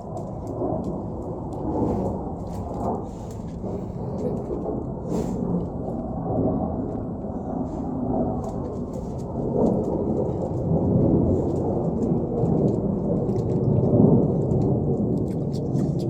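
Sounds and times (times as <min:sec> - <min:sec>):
aircraft rumble overhead: 0:00.0 - 0:16.0.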